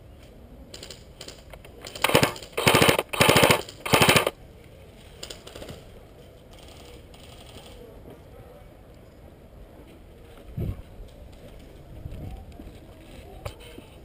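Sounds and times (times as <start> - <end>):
airsoft gun firing bursts: 1.2 - 4.4.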